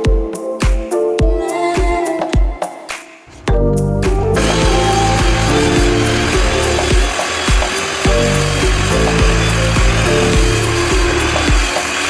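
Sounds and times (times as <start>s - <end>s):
music with steady beat: 0.0s - 12.0s
loud machine noise: 4.4s - 12.0s.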